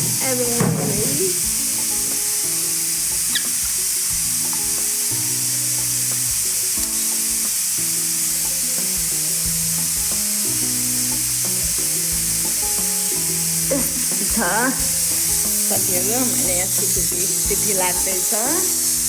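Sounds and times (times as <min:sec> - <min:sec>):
background music: 0:00.0 - 0:19.0
food sizzling on stove: 0:00.0 - 0:19.0.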